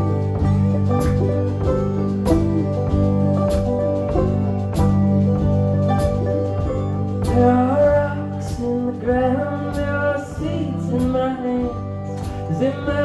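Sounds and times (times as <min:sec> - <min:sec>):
live band playing: 0:00.0 - 0:13.0
person singing: 0:07.2 - 0:13.0.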